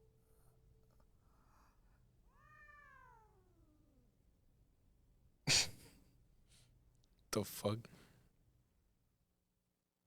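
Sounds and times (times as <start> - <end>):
cat meowing: 2.3 - 4.0.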